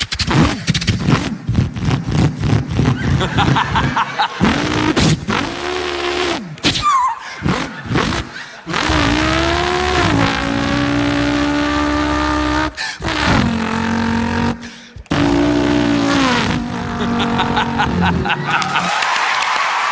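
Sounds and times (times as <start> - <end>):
man imitating car engine: 0.2 - 18.9.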